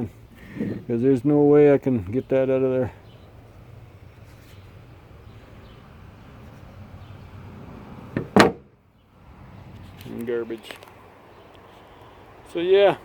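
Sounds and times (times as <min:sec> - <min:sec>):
sharp knocks: 0:08.1 - 0:08.7.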